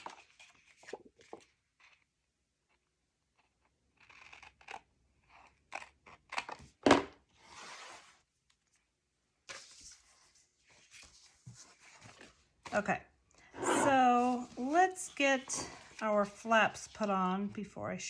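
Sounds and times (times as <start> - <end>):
paper sliding: 13.5 - 16.2.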